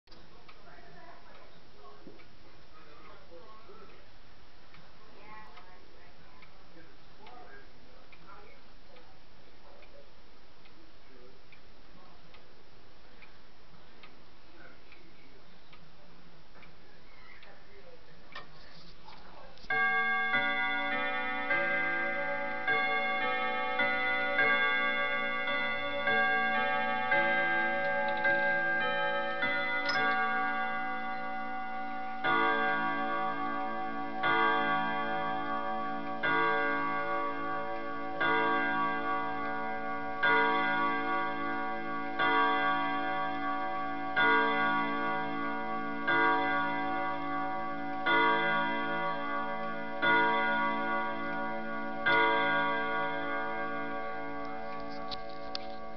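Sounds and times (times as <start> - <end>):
clock chime tune: 19.7 - 55.9
clock striking the hour: 19.7 - 55.9.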